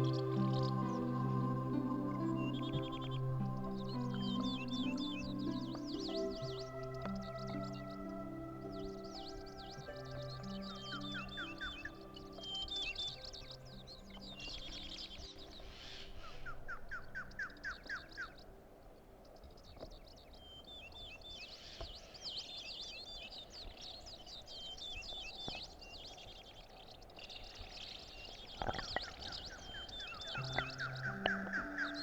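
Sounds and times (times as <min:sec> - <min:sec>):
soft sustained music notes: 0:00.0 - 0:19.2, 0:28.7 - 0:32.0
birds chirping and trilling: 0:00.0 - 0:32.0.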